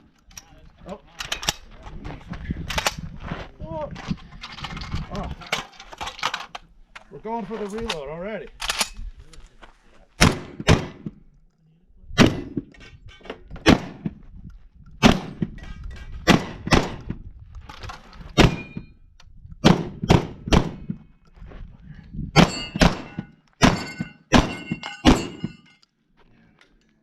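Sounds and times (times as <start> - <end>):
shotgun shots: 10.2 - 11.1, 12.2 - 12.7, 13.6 - 14.2, 15.0 - 15.5, 16.2 - 17.0, 18.4 - 18.8, 19.6 - 21.0, 22.4 - 25.5
steel targets ringing: 22.4 - 25.8.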